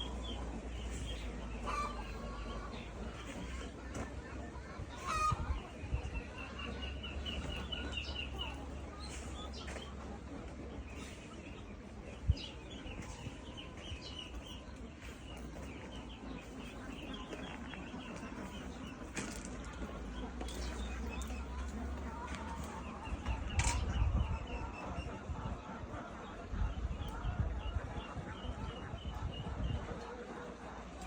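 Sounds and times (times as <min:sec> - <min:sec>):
poultry chirping: 0:00.0 - 0:31.0.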